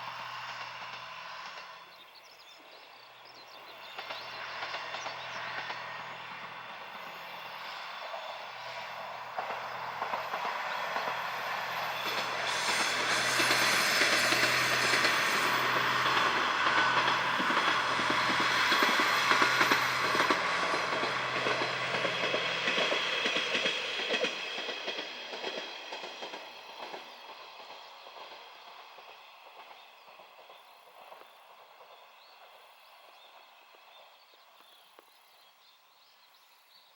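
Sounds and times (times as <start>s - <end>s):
train wheels clattering: 3.6s - 32.5s.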